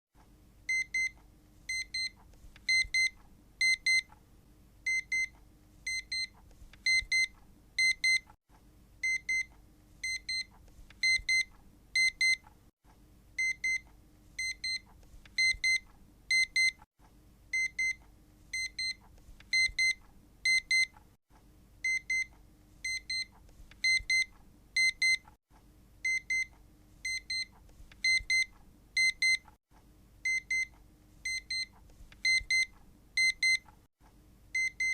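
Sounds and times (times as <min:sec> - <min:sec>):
electronic alarm double beeps: 0:32.3 - 0:33.6, 0:34.6 - 0:34.9.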